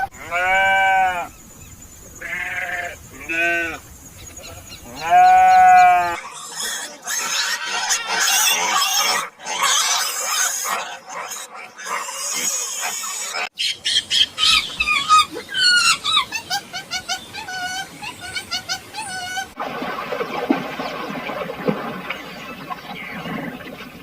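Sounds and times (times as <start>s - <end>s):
goat bleating: 0.0s - 1.3s, 2.2s - 3.8s, 4.9s - 8.2s
harsh hissing animal noise: 0.0s - 9.3s.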